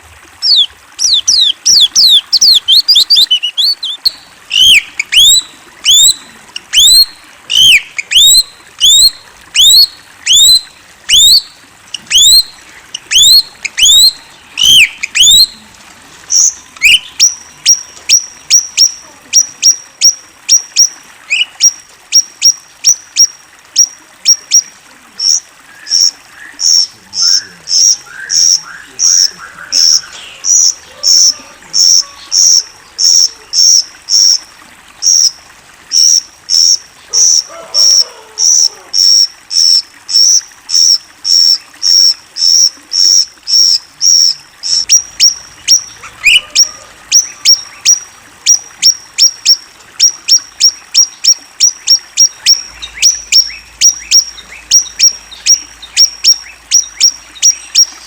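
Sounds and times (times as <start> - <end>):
songbird calls: 0.4 - 15.6, 16.3 - 34.4, 35.0 - 58.0.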